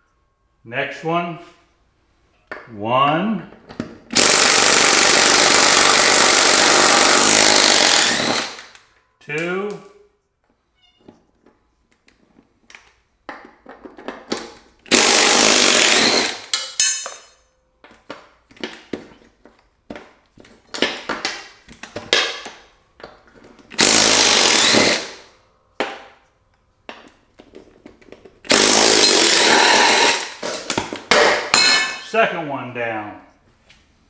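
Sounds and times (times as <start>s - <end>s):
impact gun running: 4.1s - 8.8s, 14.9s - 16.6s, 23.7s - 25.2s, 28.4s - 31.5s
handling clinks and knocks: 16.5s - 23.8s, 29.3s - 32.2s.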